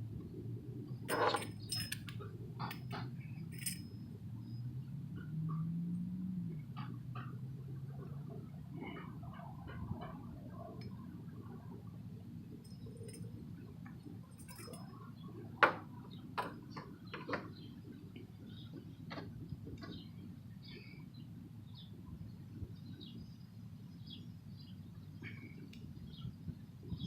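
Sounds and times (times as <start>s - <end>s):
steady low hum: 0.0s - 4.9s
metal parts clicking and clinking: 1.1s - 3.9s, 14.4s - 14.9s.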